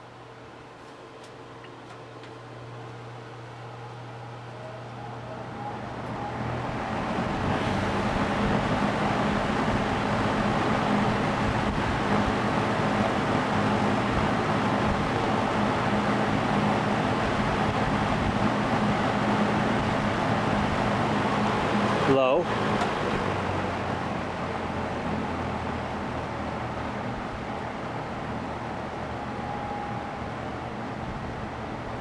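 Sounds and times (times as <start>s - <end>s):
low motor hum: 1.7s - 32.0s
box fan air rushing: 5.9s - 29.2s.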